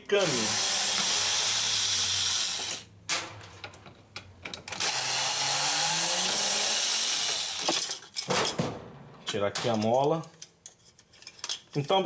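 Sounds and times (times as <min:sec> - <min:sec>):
electric screwdriver motor: 0:00.2 - 0:02.8.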